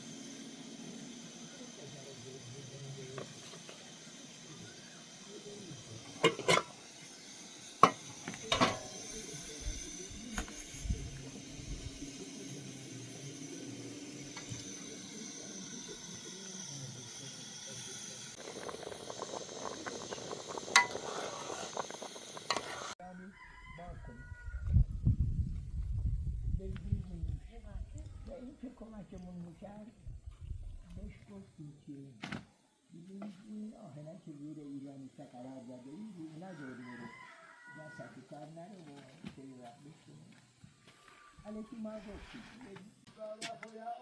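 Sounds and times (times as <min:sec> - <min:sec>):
rooster crowing: 0:22.9 - 0:25.0, 0:36.3 - 0:38.6.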